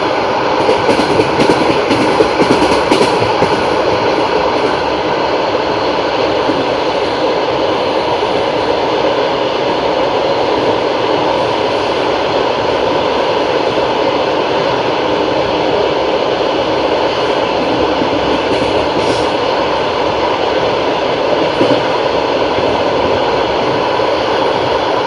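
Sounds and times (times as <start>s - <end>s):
train rolling rumble: 0.0s - 25.0s
train wheels clattering over rail joints: 0.6s - 4.8s.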